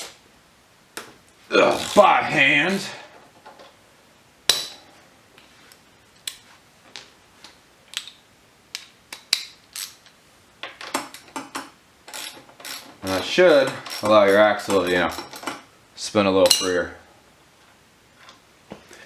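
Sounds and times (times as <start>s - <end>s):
hand tool clinking on metal: 12.1s - 15.6s.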